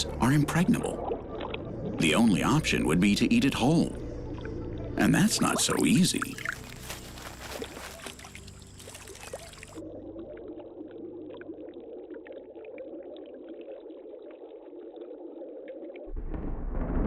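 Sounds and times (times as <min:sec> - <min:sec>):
muffled water sound: 0:00.0 - 0:17.0
stream water trickling and splashing: 0:05.1 - 0:16.0.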